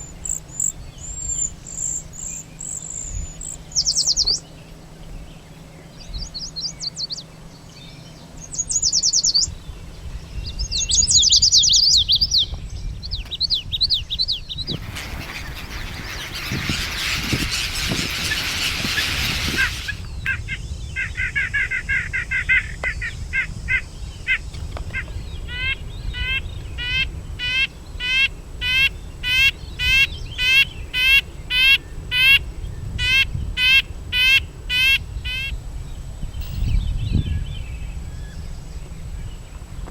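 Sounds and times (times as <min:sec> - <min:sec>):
birds trilling: 0:13.2 - 0:35.6
loud rushing noise: 0:14.6 - 0:20.2
short rising bird calls: 0:14.6 - 0:20.5.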